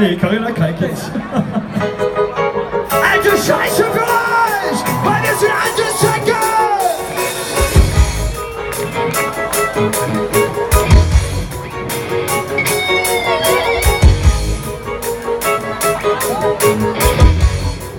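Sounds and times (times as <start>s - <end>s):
live rock band playing: 1.0s - 17.9s
heavy drum and bass hits: 7.4s - 8.4s.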